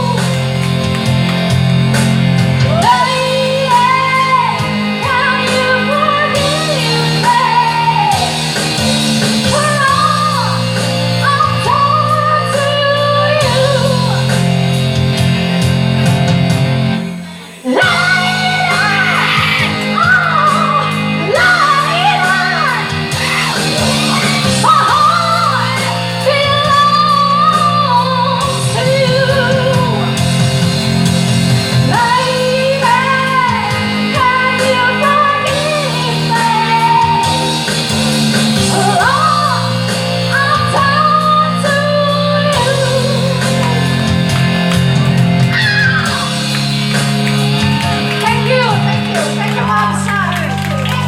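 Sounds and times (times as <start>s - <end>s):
rock band playing: 0.0s - 51.0s
person singing long sliding notes: 17.1s - 30.2s.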